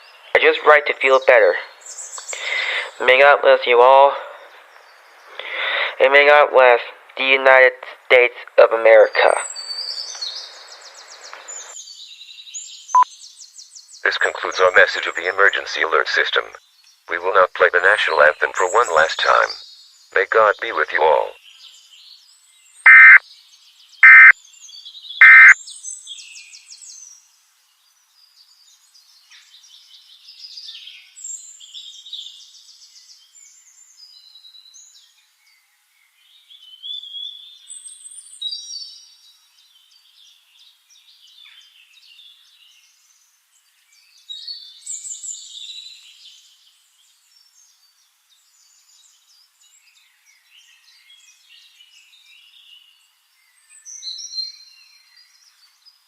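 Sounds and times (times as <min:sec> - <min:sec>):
birds chirping and singing: 0:00.0 - 0:05.9, 0:08.9 - 0:15.5, 0:16.7 - 0:26.0
loud electronic data bursts: 0:22.9 - 0:23.2, 0:24.0 - 0:24.3, 0:25.2 - 0:25.6.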